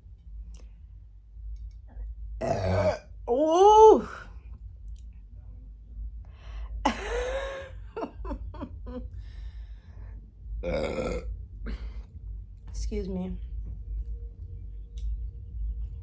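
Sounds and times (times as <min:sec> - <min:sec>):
person burping: 0:02.4 - 0:03.0, 0:10.6 - 0:11.3.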